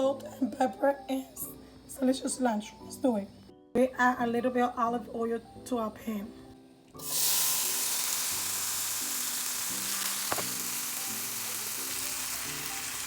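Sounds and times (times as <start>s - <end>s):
food sizzling in a frying pan: 7.0s - 13.0s.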